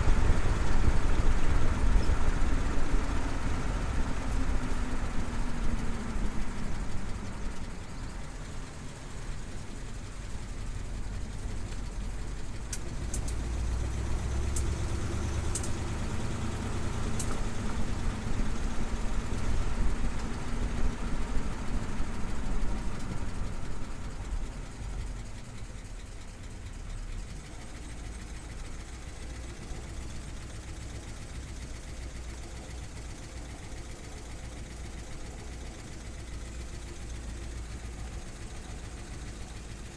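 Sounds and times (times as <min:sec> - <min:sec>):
car engine running: 0:00.0 - 0:39.9
road noise: 0:00.0 - 0:39.9
sharp clicks: 0:12.7 - 0:13.5, 0:15.5 - 0:15.9.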